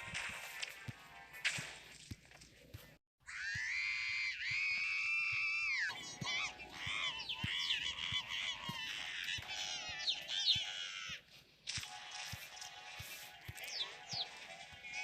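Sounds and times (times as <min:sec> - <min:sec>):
pitch-shifted cartoon screaming: 0:03.2 - 0:11.2.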